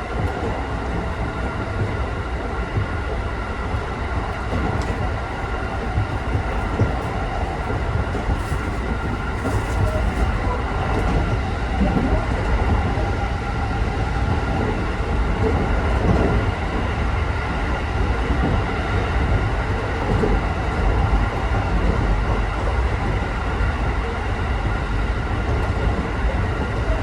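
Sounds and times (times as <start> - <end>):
train wheels rumbling on rail: 0.0 - 27.0.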